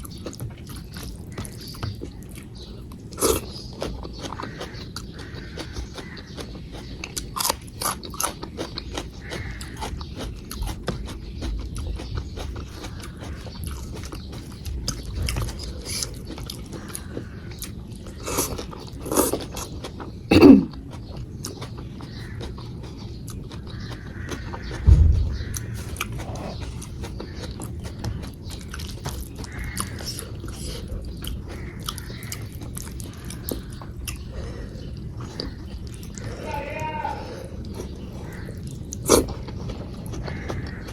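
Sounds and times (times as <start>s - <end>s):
chewing with wet mouth clicks: 0.0s - 36.4s, 37.5s - 40.9s
low thump: 24.8s - 26.2s.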